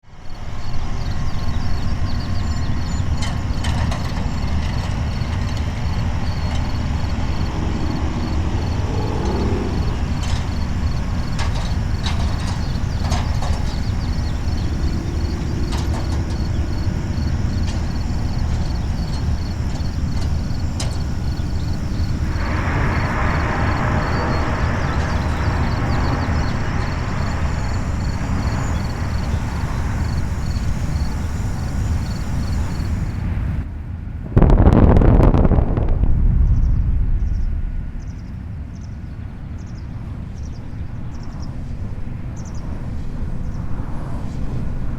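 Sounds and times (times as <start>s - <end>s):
heavy machinery engine rumbling: 1.6s - 33.6s
loud hiss: 13.6s - 33.6s.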